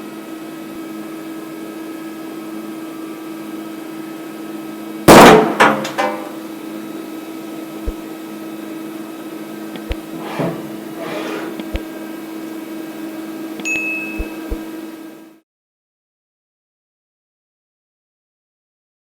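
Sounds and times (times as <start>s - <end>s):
loud sharp bang: 5.1s - 5.8s.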